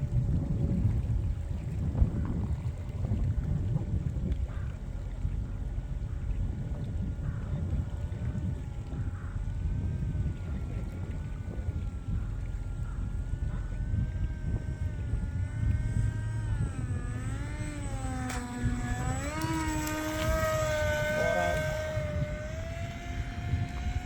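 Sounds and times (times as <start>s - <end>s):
model plane motor and propeller whining: 0.0s - 24.0s
wind rumble on microphone: 0.0s - 24.0s.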